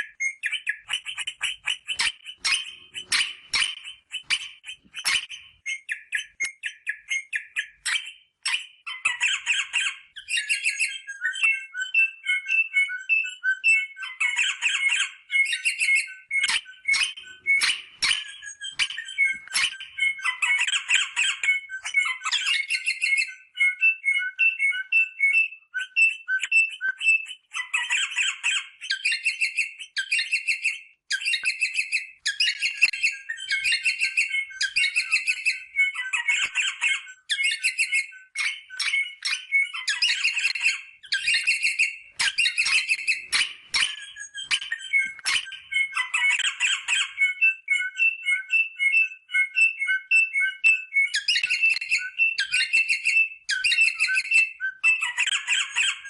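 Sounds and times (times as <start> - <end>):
parrots squawking: 0.8 - 5.4, 16.5 - 23.2, 31.2 - 38.0, 38.8 - 47.3, 55.0 - 56.0.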